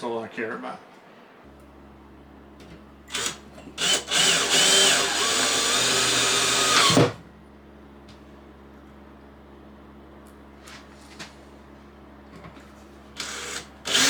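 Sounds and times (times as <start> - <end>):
power drill whining: 3.1 - 7.2, 13.2 - 14.0.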